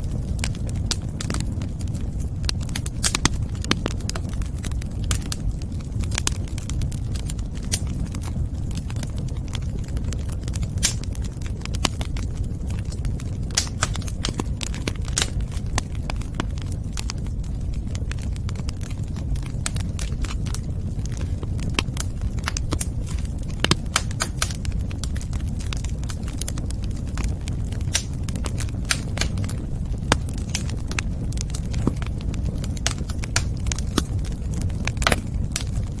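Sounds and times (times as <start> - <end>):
low rumble of flames: 0.0 - 36.0
wood fire crackling and popping: 0.0 - 36.0.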